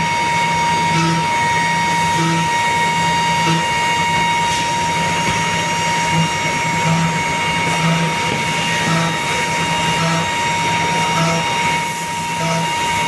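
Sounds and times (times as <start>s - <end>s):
router machine whine: 0.0s - 13.0s.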